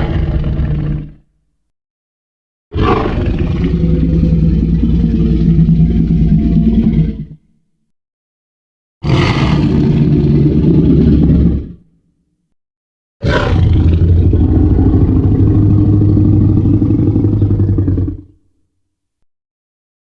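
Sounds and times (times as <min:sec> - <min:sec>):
monster roar: 0:00.0 - 0:01.2, 0:02.7 - 0:07.3, 0:09.0 - 0:11.8, 0:13.2 - 0:18.3.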